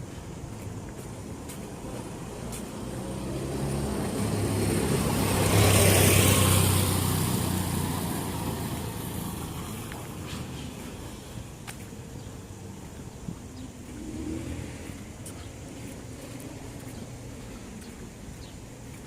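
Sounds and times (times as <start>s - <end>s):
vehicle driving past: 2.7s - 11.2s, 13.6s - 18.2s.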